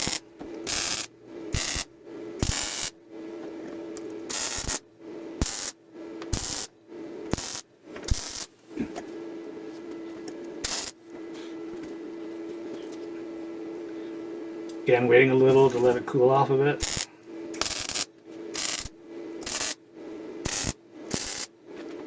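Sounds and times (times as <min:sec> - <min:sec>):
arc welder crackling: 0:00.0 - 0:03.0, 0:04.0 - 0:08.6, 0:10.4 - 0:11.2, 0:14.6 - 0:21.9
welder hum: 0:00.0 - 0:22.0.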